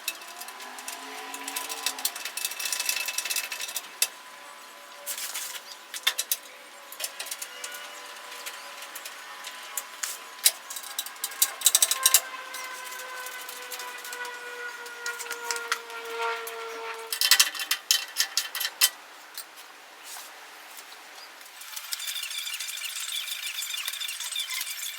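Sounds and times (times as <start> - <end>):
ratchet wrench clicking: 0.0 - 4.1, 5.9 - 14.3.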